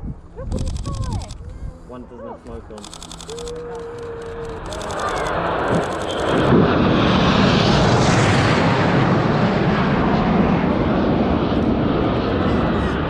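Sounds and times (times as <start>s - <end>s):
aircraft roaring overhead: 0.0s - 13.0s
camera shutter clicks: 0.5s - 1.4s, 2.8s - 6.5s.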